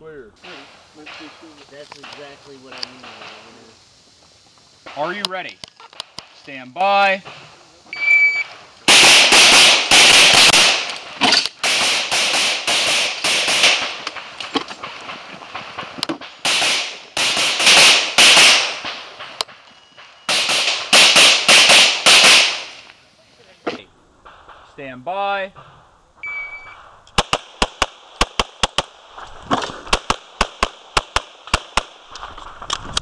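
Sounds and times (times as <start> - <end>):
pistol shots: 8.9 - 19.6, 20.3 - 22.9, 27.2 - 28.9.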